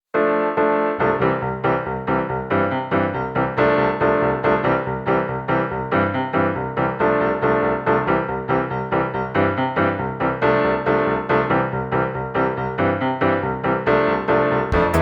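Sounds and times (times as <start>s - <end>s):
keyboard music: 14.7s - 15.0s.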